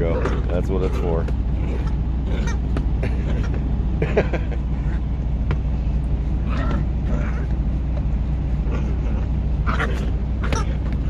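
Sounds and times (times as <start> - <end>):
low hum in truck cab: 0.0 - 11.0
puppy high-pitched cries: 2.3 - 2.8, 9.6 - 11.0.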